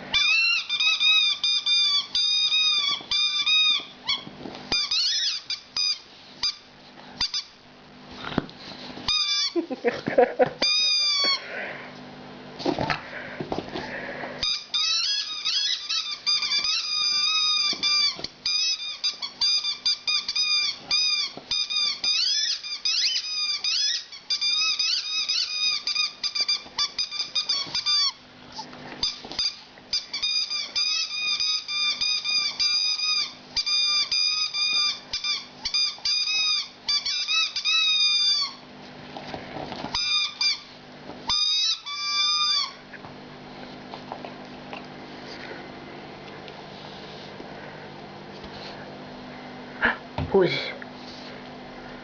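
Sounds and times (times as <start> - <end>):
rubber squeaky toy squeaking: 0.2 - 6.6, 9.1 - 9.6, 10.6 - 11.4, 14.4 - 28.2, 29.0 - 38.6, 39.9 - 40.7, 41.3 - 42.8.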